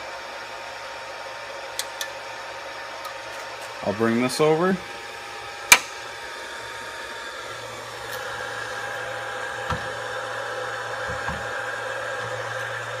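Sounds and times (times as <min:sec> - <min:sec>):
fan-like whirr: 0:00.0 - 0:13.0
sharp click: 0:05.7 - 0:06.0.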